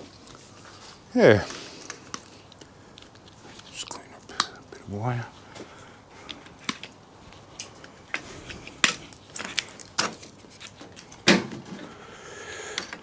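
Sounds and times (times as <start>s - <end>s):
small parts and wire clicking: 5.6s - 12.0s.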